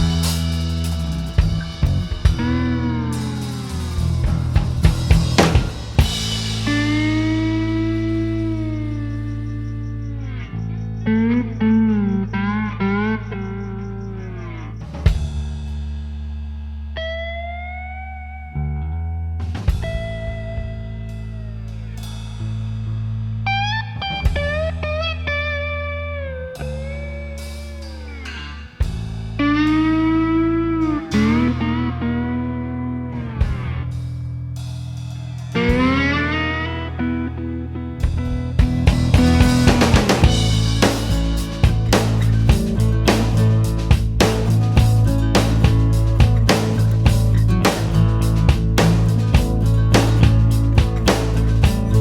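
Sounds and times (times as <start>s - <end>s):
drum beat: 0.0s - 2.8s, 3.5s - 7.8s, 15.0s - 15.8s, 19.7s - 21.0s, 38.1s - 52.0s
guitar: 0.0s - 52.0s.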